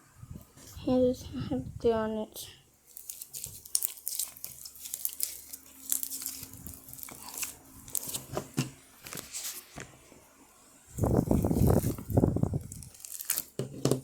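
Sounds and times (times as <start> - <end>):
sticky slime crackling: 2.9 - 8.4, 11.0 - 13.6.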